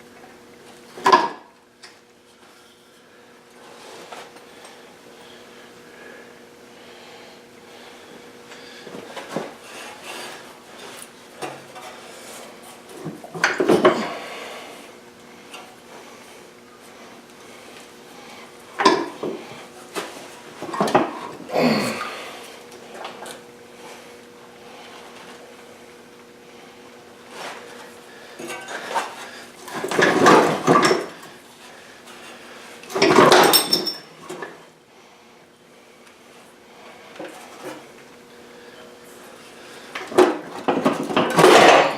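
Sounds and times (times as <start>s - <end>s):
faint hum: 1.6s - 32.9s
metal clanking and rattling: 33.0s - 34.1s.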